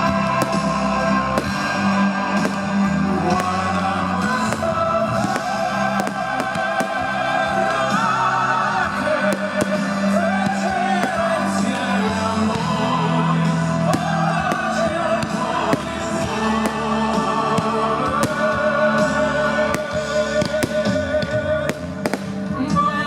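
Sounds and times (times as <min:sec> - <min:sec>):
fireworks bursting: 0:00.0 - 0:23.0
music with singing voices: 0:00.0 - 0:23.0.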